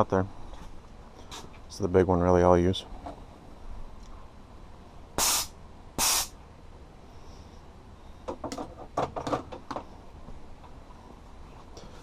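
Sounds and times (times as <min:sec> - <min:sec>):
compressed air hissing: 0:05.2 - 0:06.4.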